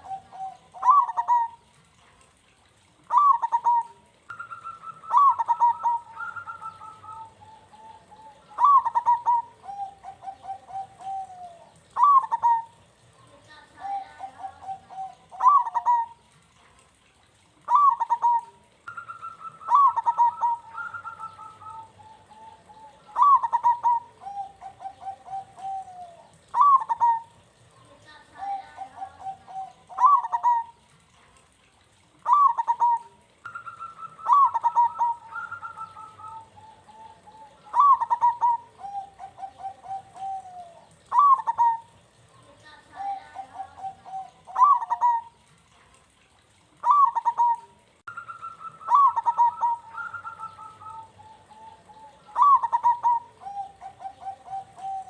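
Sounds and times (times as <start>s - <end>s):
second dove higher coo: 0.0s - 1.8s, 3.0s - 13.0s, 13.8s - 16.3s, 17.6s - 27.5s, 28.4s - 30.8s, 32.2s - 42.0s, 42.9s - 45.4s, 46.8s - 55.0s
doves cooing: 0.0s - 31.1s, 31.7s - 55.0s.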